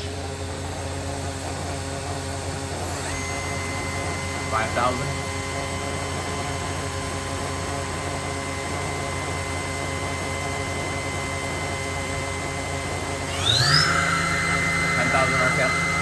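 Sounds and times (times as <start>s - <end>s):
machine spindle whine: 1.3s - 16.0s
machine hum: 11.0s - 16.0s.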